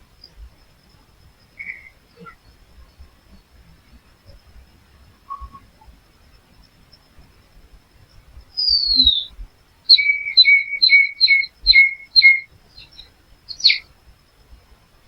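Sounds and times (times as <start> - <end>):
small songbird singing: 1.4 - 3.6, 8.5 - 14.0.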